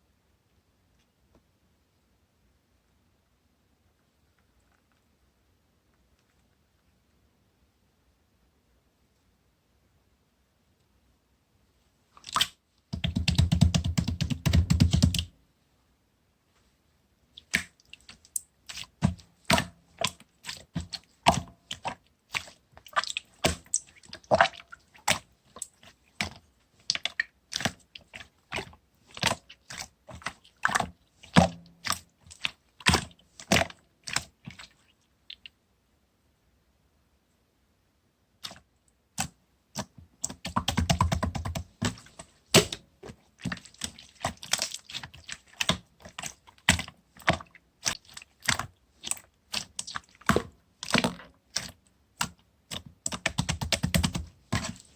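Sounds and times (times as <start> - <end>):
slime crackling: 43.4 - 54.9.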